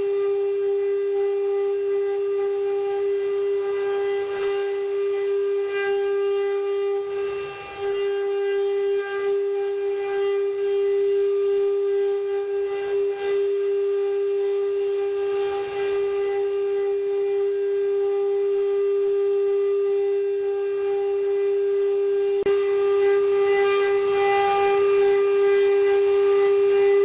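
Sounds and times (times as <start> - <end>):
faint wood cutting noise: 0.0 - 27.0
machine spindle motors whining: 0.0 - 27.0.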